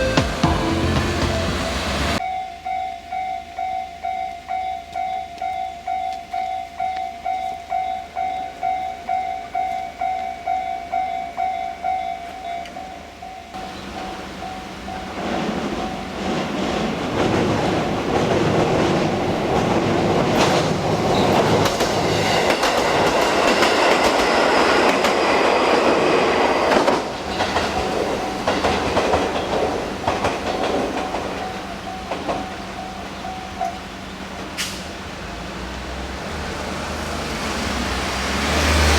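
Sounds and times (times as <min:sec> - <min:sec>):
crossing alarm dinging: 0:00.0 - 0:16.4, 0:30.4 - 0:34.1
train wheels clacking over rail joints: 0:13.9 - 0:33.8.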